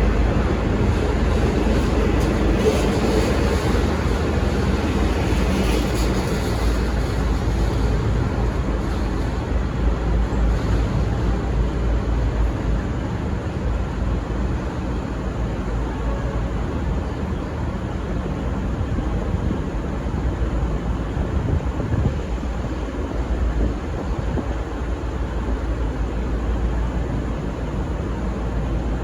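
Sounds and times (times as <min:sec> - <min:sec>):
rushing noise: 0:00.0 - 0:17.0
diesel train engine: 0:00.0 - 0:29.0.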